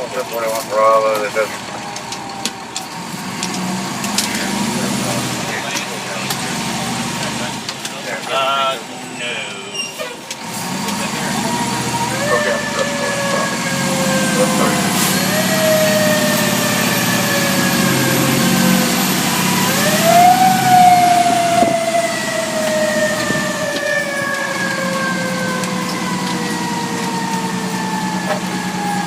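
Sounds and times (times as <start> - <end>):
fire engine siren wailing: 0.0 - 29.0
truck engine running: 0.0 - 29.0.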